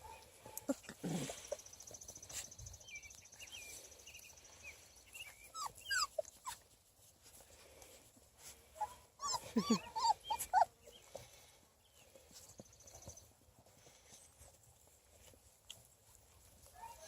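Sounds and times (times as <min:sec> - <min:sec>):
puppies whimpering: 0:00.6 - 0:06.8, 0:08.7 - 0:11.5
puppy yelps: 0:05.4 - 0:06.6, 0:08.8 - 0:10.7.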